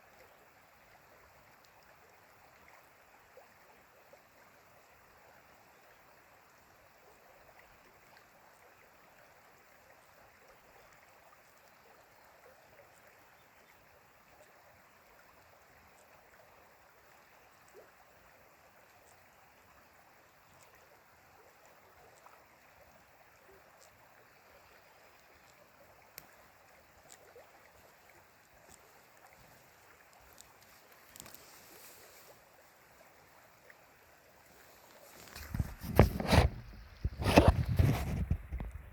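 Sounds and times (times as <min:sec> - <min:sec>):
flowing stream rushing: 0:16.7 - 0:38.9
small ticks: 0:24.6 - 0:31.8.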